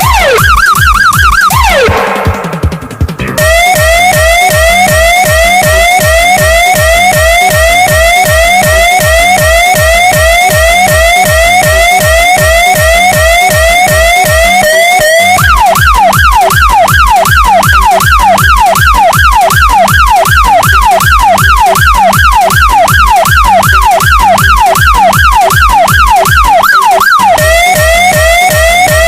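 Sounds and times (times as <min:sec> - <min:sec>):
electronic siren yelp: 0:00.0 - 0:02.2, 0:03.4 - 0:29.0
heavy bass thump: 0:01.6 - 0:04.3.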